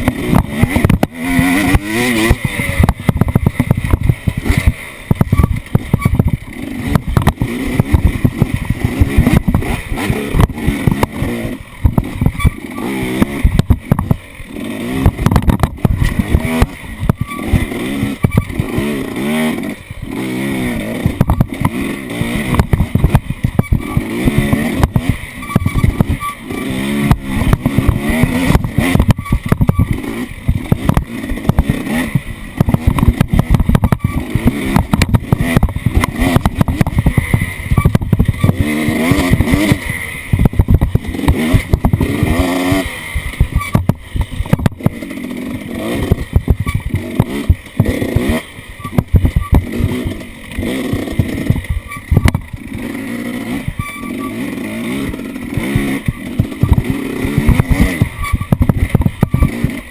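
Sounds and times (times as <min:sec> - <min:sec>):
rough clatter and knocking: 0:00.0 - 0:14.2, 0:15.0 - 0:18.9, 0:27.0 - 0:39.8, 0:45.9 - 0:52.6
off-road vehicle engine revving: 0:00.0 - 0:59.9.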